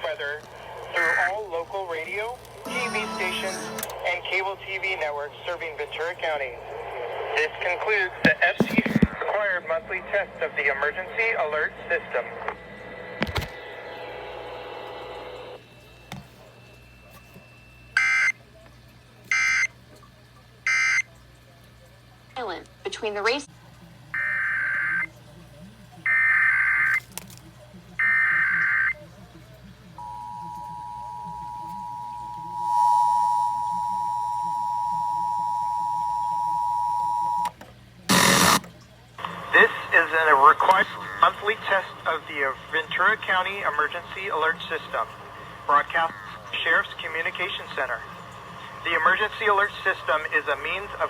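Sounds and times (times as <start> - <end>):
two-tone attention signal: 19.3 - 19.8, 20.7 - 21.1, 30.0 - 37.5
digital data bursts: 38.1 - 38.6.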